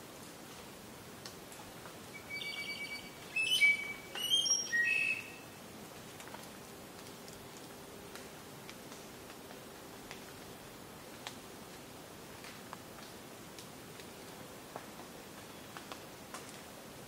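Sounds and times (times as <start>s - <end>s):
faint forest background: 0.0s - 17.0s
songbird singing: 2.1s - 5.6s.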